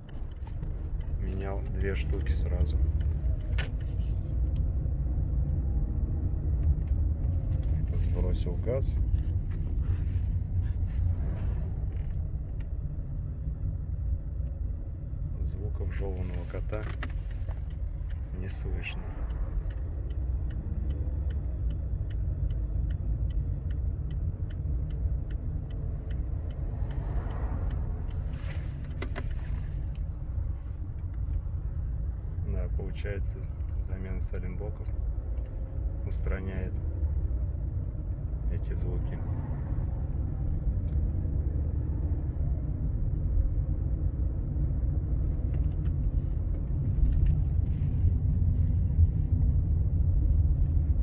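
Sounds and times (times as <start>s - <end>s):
faint regular ticking: 0.0s - 5.6s, 11.6s - 39.0s
road and engine rumble: 0.0s - 51.0s.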